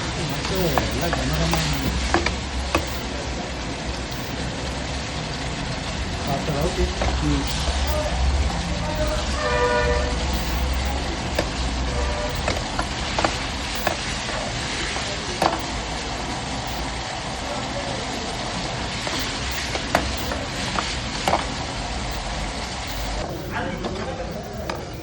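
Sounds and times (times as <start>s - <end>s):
chicken sizzling in a pan: 0.0s - 25.0s.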